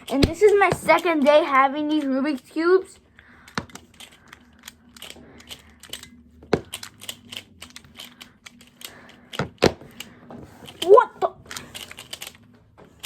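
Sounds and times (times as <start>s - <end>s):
speed cube plastic clicks: 3.4s - 12.5s.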